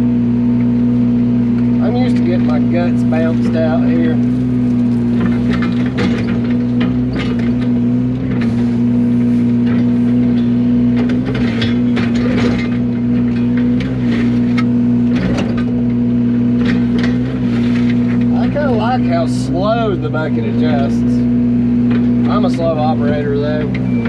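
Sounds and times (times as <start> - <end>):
excavator diesel engine running: 0.0 - 24.0
machine knocks and rattles: 4.6 - 8.6, 9.6 - 15.8.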